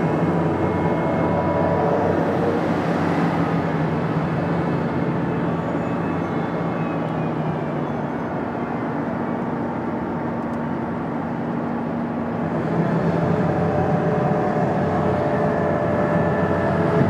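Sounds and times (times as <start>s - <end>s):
jet engines running: 0.0s - 17.0s.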